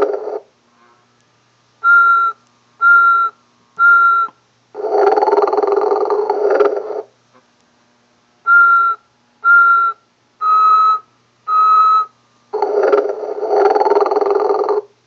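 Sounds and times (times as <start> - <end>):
short whistling tones: 1.8 - 4.4, 8.5 - 12.2.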